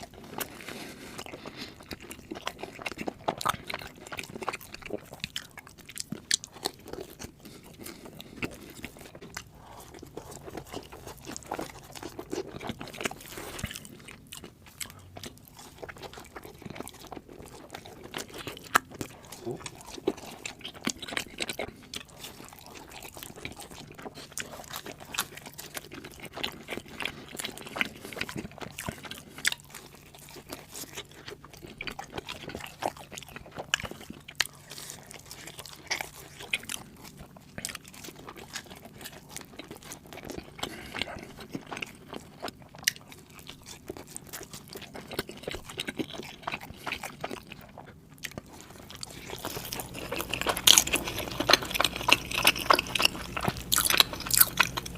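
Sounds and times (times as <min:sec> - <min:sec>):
pizza being chewed: 0:00.0 - 0:54.9
crust crunching: 0:47.6 - 0:54.9.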